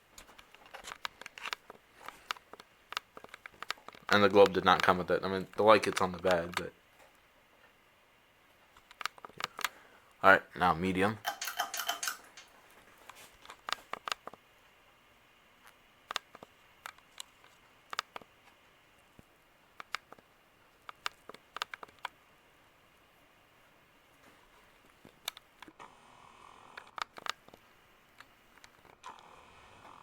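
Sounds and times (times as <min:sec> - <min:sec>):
fan clicks and ticks: 0:00.0 - 0:07.8, 0:08.6 - 0:09.8, 0:11.0 - 0:14.7, 0:16.1 - 0:22.2, 0:24.8 - 0:25.8, 0:26.8 - 0:29.2
ceiling fan hum: 0:00.0 - 0:30.0.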